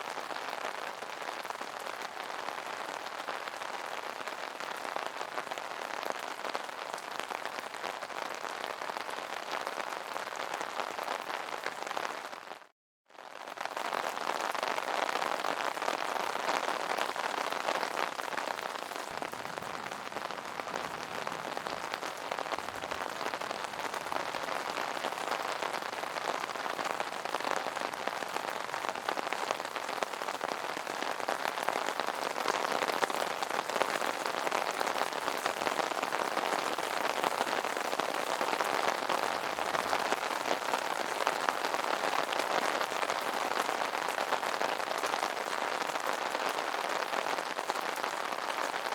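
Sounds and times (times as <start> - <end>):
rain falling on an umbrella: 0.0 - 48.9.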